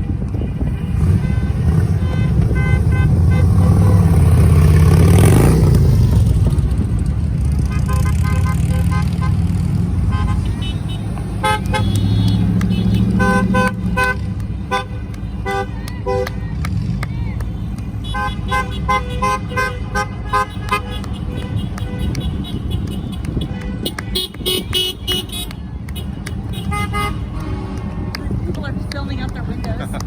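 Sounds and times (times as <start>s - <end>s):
car horns honking: 0.0s - 30.0s
rumble of passing cars: 0.0s - 30.0s.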